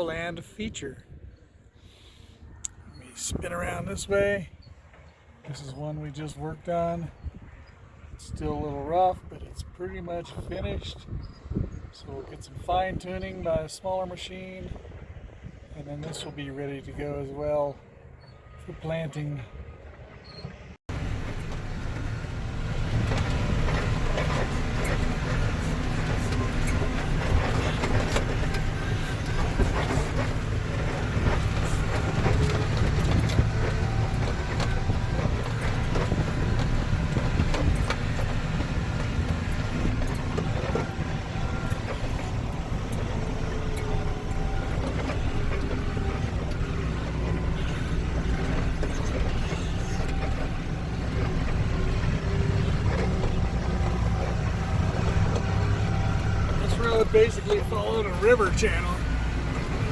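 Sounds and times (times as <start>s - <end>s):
vehicle rattling and clatter: 0.0s - 59.9s
heavy vehicle engine drone: 14.3s - 59.9s.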